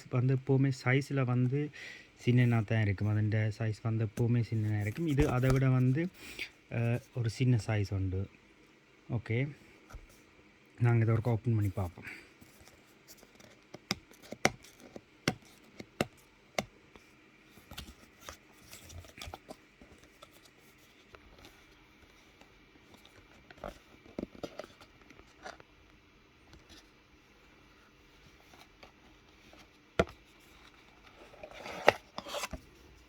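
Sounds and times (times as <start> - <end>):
packaging scraping and rustling: 4.4 - 6.1, 17.6 - 21.7, 28.3 - 32.8
packaging clicks and taps: 13.3 - 16.8.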